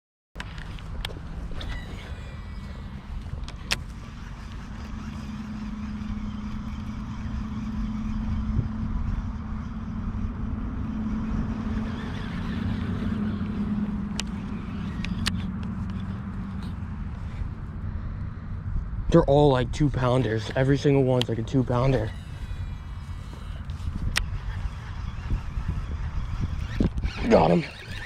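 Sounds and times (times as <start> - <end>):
road traffic rumble: 0.4 - 28.0
sharp clicks: 13.2 - 16.8.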